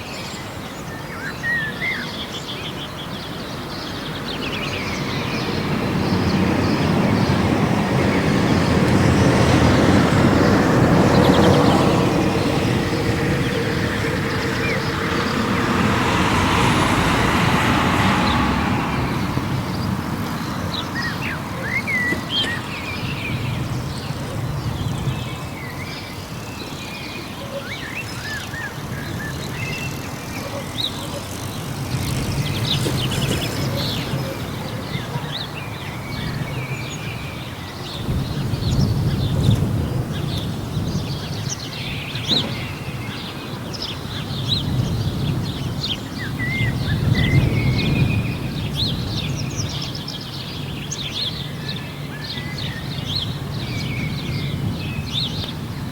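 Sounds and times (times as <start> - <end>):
distant traffic rumble: 0.0 - 55.9
small birds chirping: 0.0 - 55.9
vehicle passing: 4.2 - 25.4, 28.1 - 37.0.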